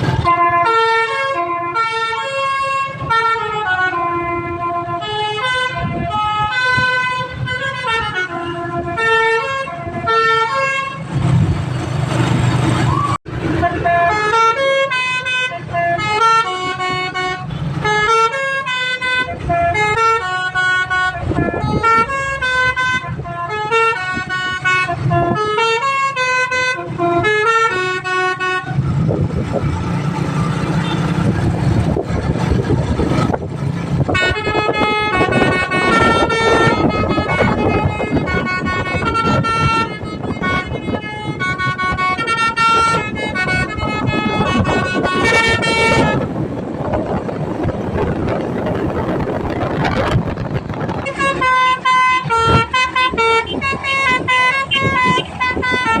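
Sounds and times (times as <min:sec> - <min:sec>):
multi-tone bus horn tune: 0:00.0 - 0:11.4, 0:13.4 - 0:29.3, 0:30.6 - 0:33.3, 0:33.9 - 0:47.2, 0:50.9 - 0:56.0.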